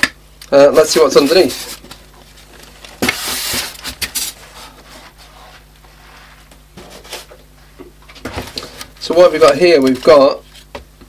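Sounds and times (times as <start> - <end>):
packaging rustling: 1.4 - 4.4.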